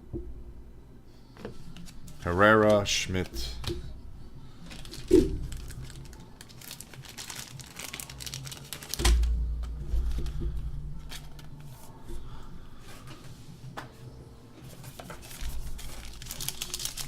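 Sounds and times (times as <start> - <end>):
cards being handled: 1.4 - 3.8, 14.6 - 17.0
wrapper crinkling and tearing: 4.6 - 10.4, 11.0 - 11.8, 14.9 - 17.0.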